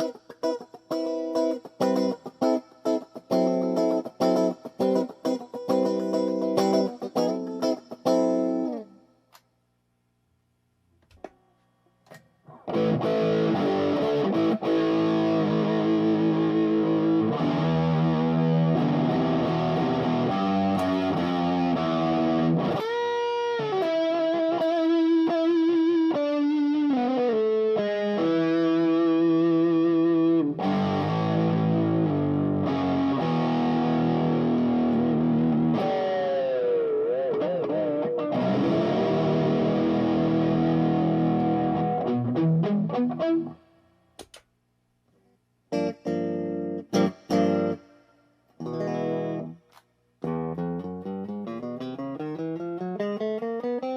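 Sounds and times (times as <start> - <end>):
distorted electric guitar: 12.5 - 43.6, 45.7 - 48.0.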